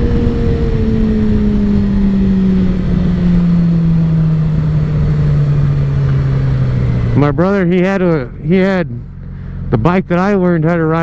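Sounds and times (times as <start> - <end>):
motorcycle engine running: 0.0 - 11.0
road and wind noise: 0.0 - 11.0.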